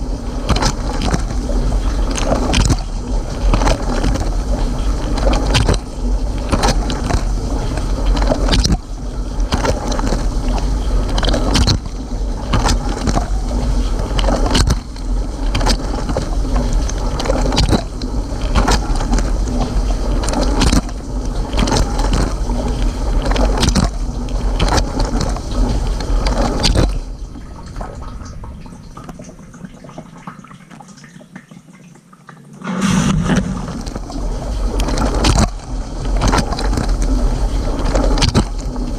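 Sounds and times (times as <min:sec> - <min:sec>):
low hum: 0:32.5 - 0:37.8.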